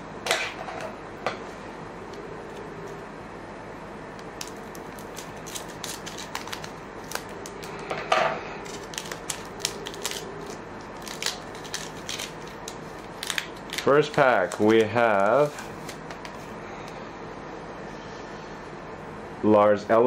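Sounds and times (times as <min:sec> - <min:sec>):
cards being handled: 0:04.3 - 0:07.8, 0:08.6 - 0:16.5
wrapper crinkling as torn open: 0:04.4 - 0:07.7, 0:08.6 - 0:16.4.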